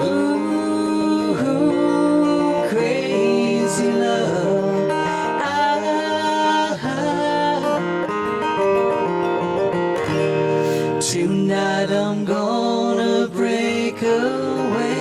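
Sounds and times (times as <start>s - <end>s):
person singing: 0.0s - 8.9s, 10.6s - 15.0s
acoustic guitar strumming: 0.0s - 15.0s.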